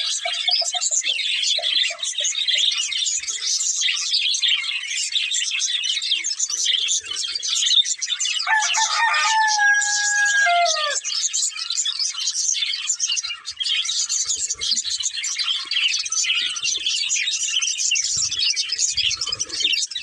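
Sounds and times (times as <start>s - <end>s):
budgies chirping: 0.0s - 20.0s
rooster crowing: 8.4s - 11.0s.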